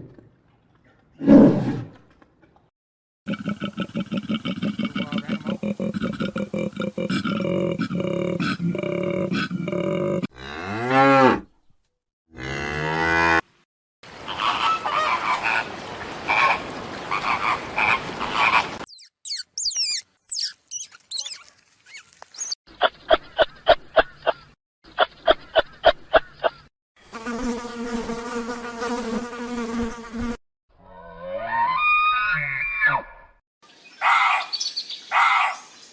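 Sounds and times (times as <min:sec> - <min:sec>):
cow mooing: 0:09.7 - 0:11.5, 0:12.3 - 0:13.4
insect buzzing: 0:18.9 - 0:22.5.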